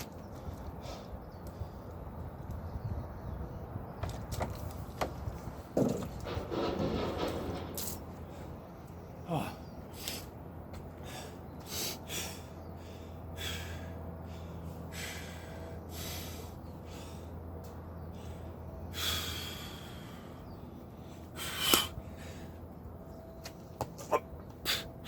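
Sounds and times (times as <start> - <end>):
steady low hum: 4.6 - 25.0
man breathing hard: 10.9 - 22.8.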